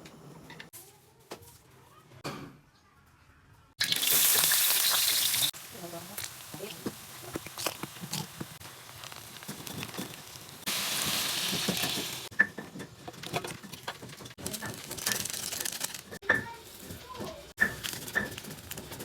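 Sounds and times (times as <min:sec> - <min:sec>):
food sizzling in a pan: 0:03.8 - 0:12.3.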